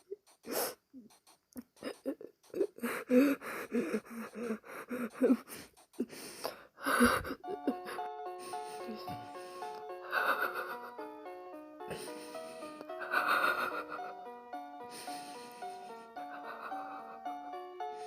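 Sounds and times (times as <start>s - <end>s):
person sobbing: 1.7s - 11.0s, 11.9s - 14.1s, 14.9s - 17.3s
soft background music: 1.8s - 18.0s.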